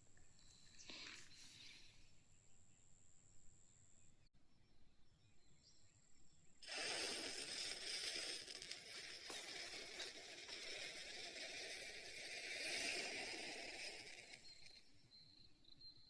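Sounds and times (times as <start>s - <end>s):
firecracker fizzing: 6.6s - 14.7s.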